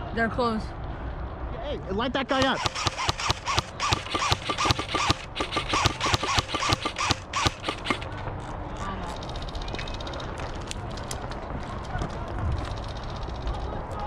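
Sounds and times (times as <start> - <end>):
airsoft guns firing rapidly: 2.3 - 8.2.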